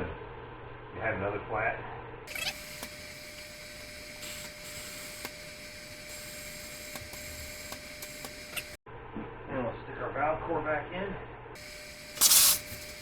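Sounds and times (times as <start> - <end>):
air hissing from tire valve: 2.4 - 8.6, 11.6 - 13.0.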